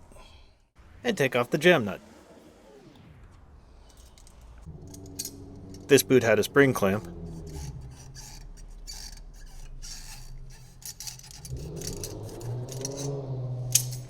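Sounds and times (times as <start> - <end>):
low hum: 2.0 - 14.0
hand tools clicking on metal: 6.8 - 14.0.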